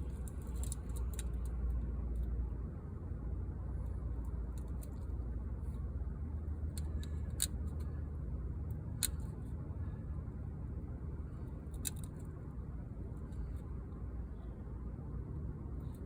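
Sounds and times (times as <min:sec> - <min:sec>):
steady low hum: 0:00.0 - 0:16.0
sharp clicks and snips: 0:00.1 - 0:02.4, 0:06.7 - 0:08.0, 0:08.8 - 0:09.4, 0:11.7 - 0:12.3.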